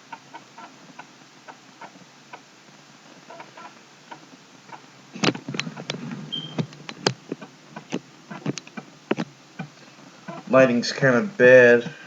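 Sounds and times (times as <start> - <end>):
floppy drive clicking: 3.3 - 10.5.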